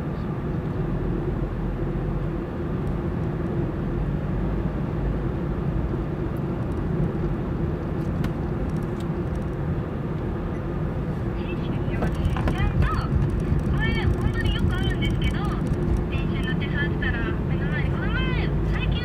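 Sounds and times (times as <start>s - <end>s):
car engine and tyre noise: 0.0s - 19.0s
low hum: 0.0s - 19.0s.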